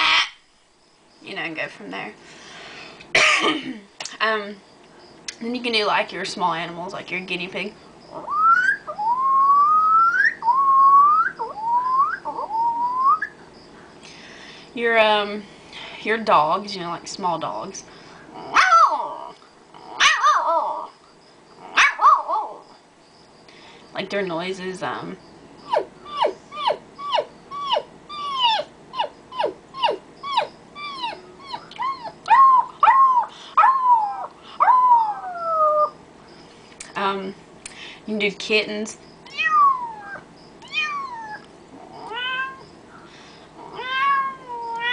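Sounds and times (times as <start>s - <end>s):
woman imitating guinea pig squeals: 0.0s - 0.4s, 8.1s - 13.3s, 18.5s - 19.3s, 25.7s - 36.0s, 39.3s - 42.6s.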